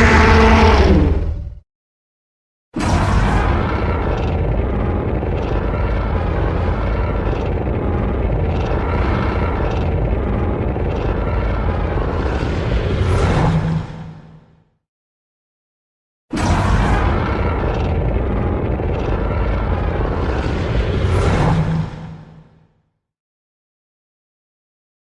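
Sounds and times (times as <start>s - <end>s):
deep monster rumble: 0.0s - 1.6s, 2.8s - 14.6s, 16.4s - 22.7s.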